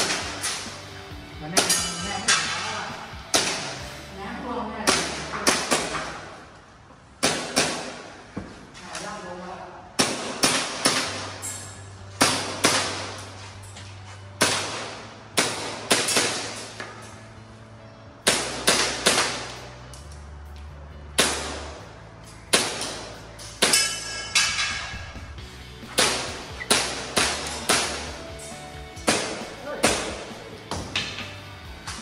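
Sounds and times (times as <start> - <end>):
background music with bass: 0.0 - 4.9, 11.1 - 32.0
airsoft pistol shots: 3.3 - 3.8, 10.0 - 11.4, 12.2 - 13.2, 14.4 - 16.7, 21.2 - 21.8, 22.5 - 24.0, 25.9 - 28.1, 29.0 - 30.3.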